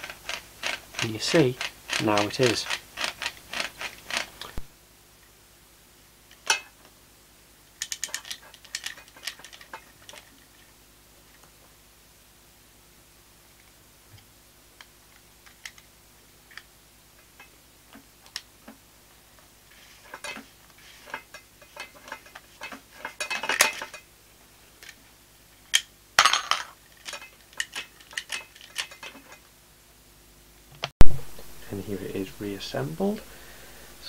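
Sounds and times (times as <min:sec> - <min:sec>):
clinking and rattling: 0:20.0 - 0:24.0.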